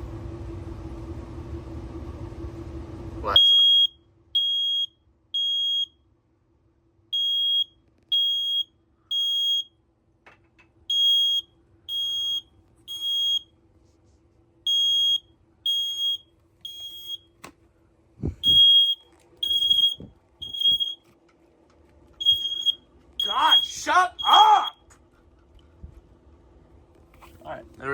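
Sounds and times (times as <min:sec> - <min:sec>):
smoke alarm beeping: 0:03.4 - 0:06.0, 0:07.1 - 0:09.8, 0:10.9 - 0:13.5, 0:14.7 - 0:17.4, 0:18.4 - 0:21.1, 0:22.2 - 0:24.8.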